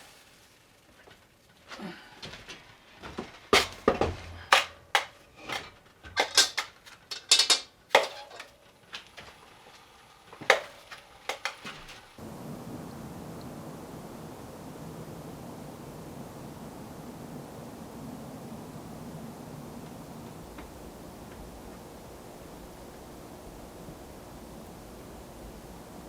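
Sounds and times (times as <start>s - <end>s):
steady hiss: 0.0s - 26.0s
dishes and utensils clattering: 3.6s - 8.6s.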